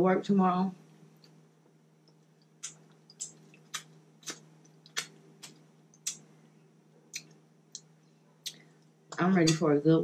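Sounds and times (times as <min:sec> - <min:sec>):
steady low hum: 0:00.0 - 0:10.0
wet mouth smacks while chewing: 0:02.1 - 0:06.2.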